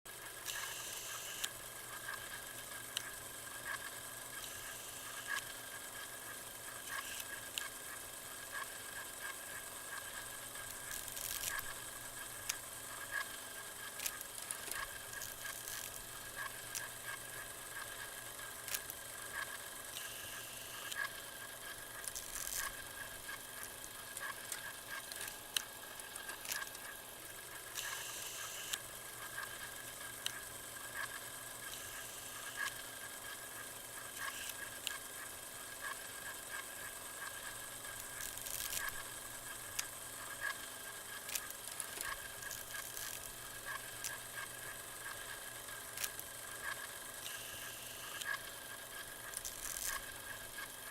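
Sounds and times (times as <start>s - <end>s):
crackles and clicks: 0.2s - 6.1s, 6.7s - 50.9s
static hiss: 0.3s - 1.6s, 27.5s - 30.0s.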